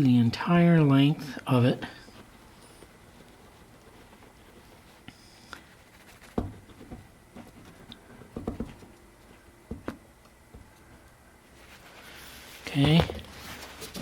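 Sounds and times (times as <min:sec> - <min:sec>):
wood knocks and taps: 0:06.3 - 0:07.5, 0:08.3 - 0:08.9, 0:09.7 - 0:10.7.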